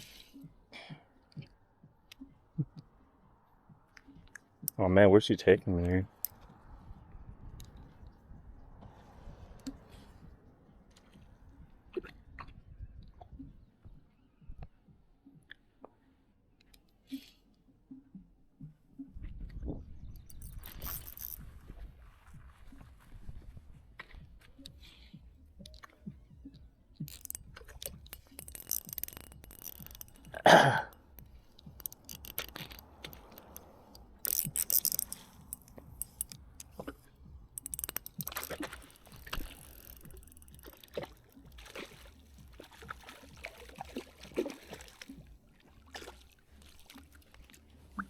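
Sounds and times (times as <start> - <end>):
knocks and clicks in kayak: 23.2 - 48.0
water splashing: 27.0 - 48.0.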